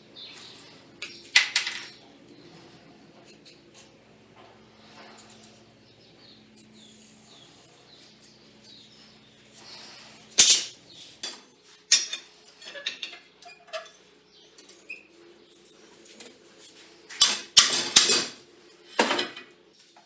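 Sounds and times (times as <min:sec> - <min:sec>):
clicks and knocks of steel parts: 0:01.0 - 0:02.0, 0:10.4 - 0:14.0.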